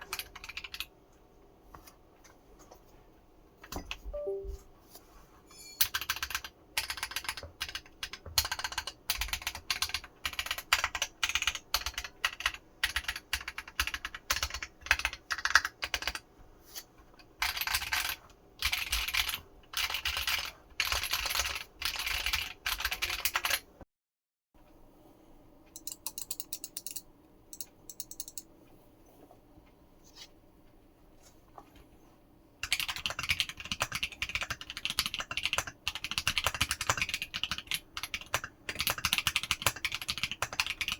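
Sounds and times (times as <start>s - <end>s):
mechanical keyboard typing: 0.0s - 0.9s, 5.8s - 16.3s, 17.3s - 23.7s, 25.8s - 28.5s, 32.6s - 40.9s.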